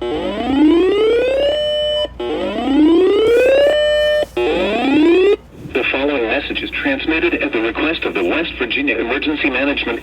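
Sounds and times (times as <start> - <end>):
rising siren alert tone: 0.0 - 5.4.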